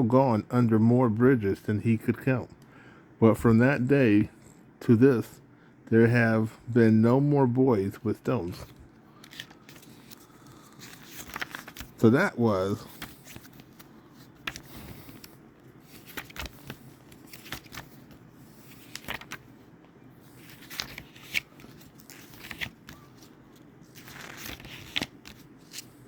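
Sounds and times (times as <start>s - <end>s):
faint room hum: 0.0s - 26.0s
book pages rustling: 8.5s - 19.6s, 20.2s - 26.0s.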